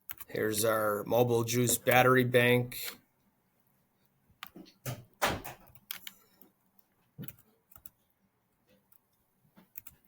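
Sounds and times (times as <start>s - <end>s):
computer keyboard and mouse clicks: 0.0s - 0.3s, 4.4s - 8.1s, 8.7s - 10.0s.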